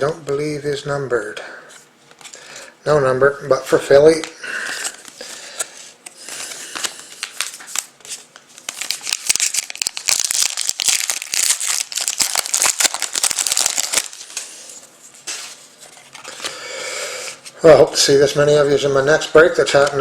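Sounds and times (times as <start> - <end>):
plastic wrapping crinkling: 4.6 - 16.5.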